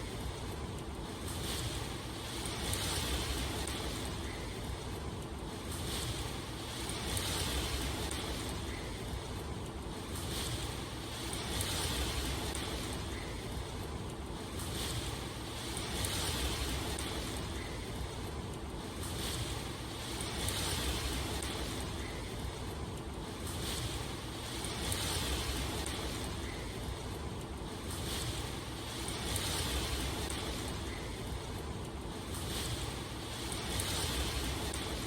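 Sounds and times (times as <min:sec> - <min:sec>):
rushing water: 0:23.2 - 0:35.0.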